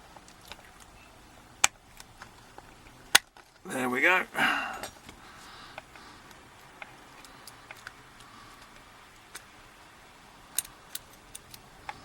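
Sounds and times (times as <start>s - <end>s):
small metal clicks of a tool: 10.5s - 12.0s.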